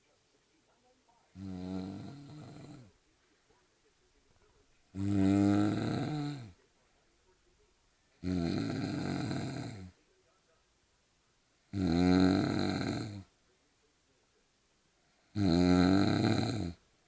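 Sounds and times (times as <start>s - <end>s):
man snoring loudly: 1.4s - 2.9s, 5.0s - 6.6s, 8.2s - 9.9s, 11.7s - 13.3s, 15.3s - 16.8s.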